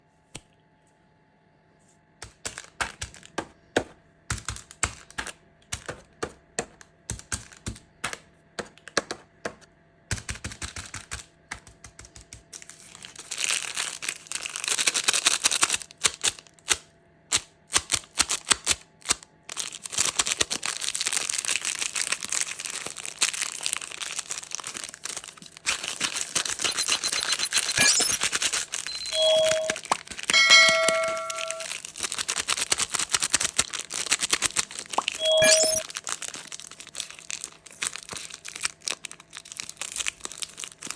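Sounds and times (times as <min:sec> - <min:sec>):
plastic wrappers crinkling: 0:12.5 - 0:16.6, 0:18.0 - 0:40.9
brief ringing tone: 0:26.6 - 0:28.2, 0:28.9 - 0:31.7, 0:35.2 - 0:35.8.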